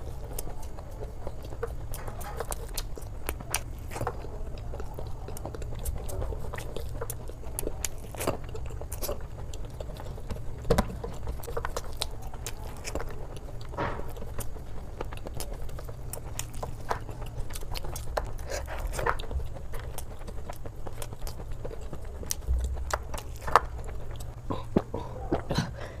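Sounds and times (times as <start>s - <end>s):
crisp bites and chewing: 0.0s - 25.6s
steady low hum: 0.0s - 26.0s
mouth sounds: 24.2s - 26.0s.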